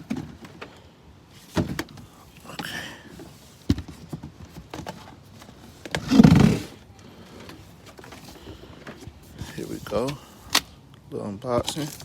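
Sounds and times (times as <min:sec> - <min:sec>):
cardboard scraping: 0:05.8 - 0:06.8.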